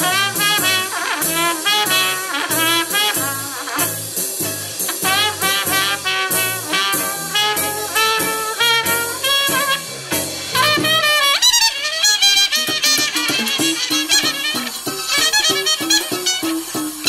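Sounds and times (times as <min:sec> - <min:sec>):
swing jazz with brass: 0:00.0 - 0:17.0.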